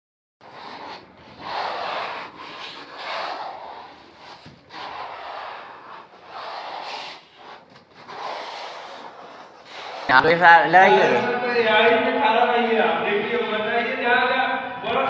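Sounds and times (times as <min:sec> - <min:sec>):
scraping strokes on a surface: 0:00.4 - 0:11.2.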